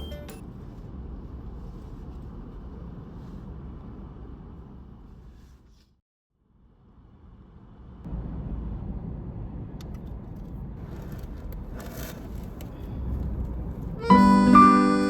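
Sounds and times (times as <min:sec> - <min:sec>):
low rumbling noise: 0:06.8 - 0:11.0.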